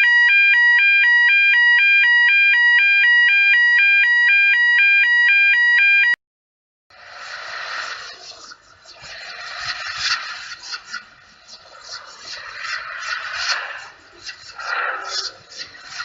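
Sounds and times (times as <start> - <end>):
electronic two-tone alarm: 0.0 - 6.2.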